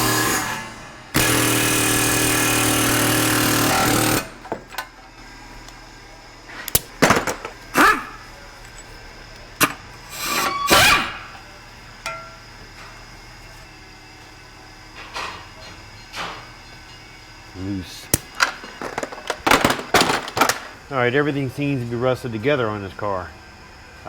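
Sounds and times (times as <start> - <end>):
power tool running: 0.0 - 12.7
metal clanks and knocks: 12.0 - 12.4, 18.2 - 20.8.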